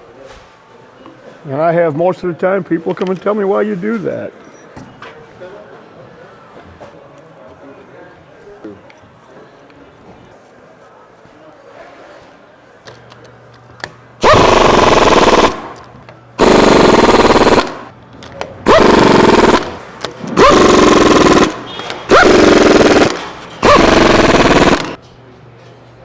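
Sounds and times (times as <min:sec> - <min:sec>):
air impact wrench hammering: 0:14.2 - 0:17.9, 0:18.7 - 0:25.0.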